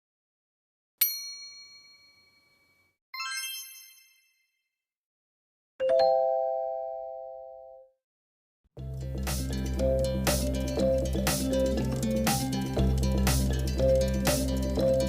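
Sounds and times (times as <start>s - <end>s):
low ringing bell tone: 1.0s - 3.0s
bright ding: 1.0s - 4.5s
glittering high chimes: 1.6s - 4.5s.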